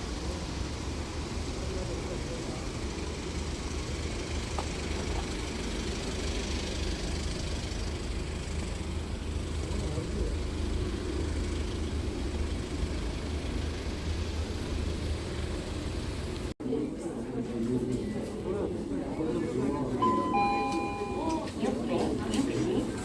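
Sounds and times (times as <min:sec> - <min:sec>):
vehicle engine rumbling: 0:00.0 - 0:16.6.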